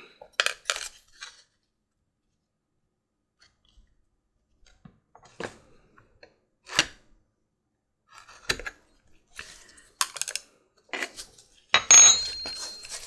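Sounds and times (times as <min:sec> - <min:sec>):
tool scraping: 0:11.0 - 0:13.0.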